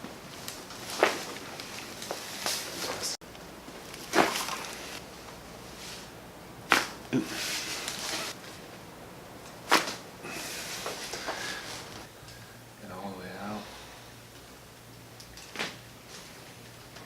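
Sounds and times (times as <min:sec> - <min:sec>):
clothing rustling: 0:00.2 - 0:05.0.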